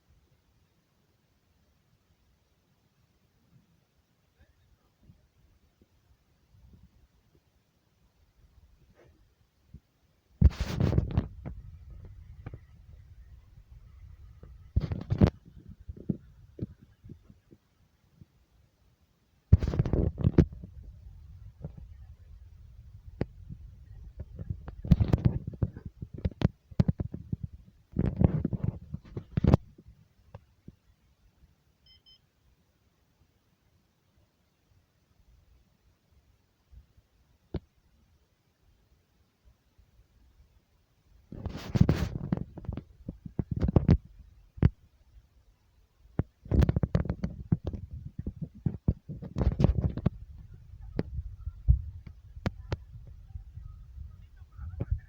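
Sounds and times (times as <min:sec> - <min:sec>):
low rumbling: 0:10.6 - 0:16.6, 0:19.6 - 0:26.0, 0:49.6 - 0:55.0
earthquake low rumble: 0:46.6 - 0:55.0.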